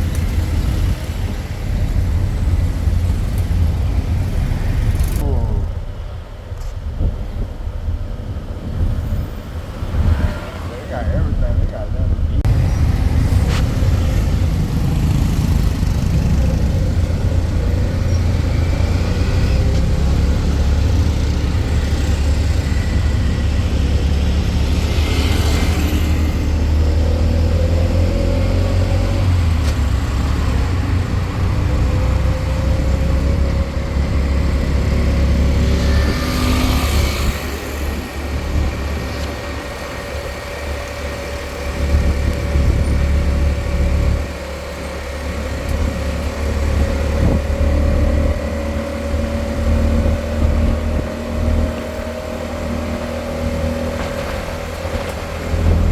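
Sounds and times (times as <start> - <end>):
vehicle engine and road rumble: 0.0 - 55.9
vehicles passing hiss: 9.3 - 26.8.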